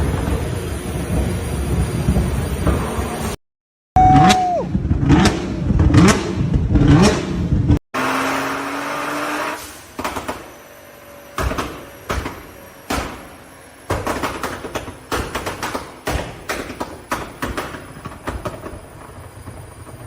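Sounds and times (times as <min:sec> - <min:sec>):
car engine revving: 0:04.8 - 0:12.6
sharp exhaust pops: 0:09.8 - 0:10.6, 0:11.3 - 0:20.0.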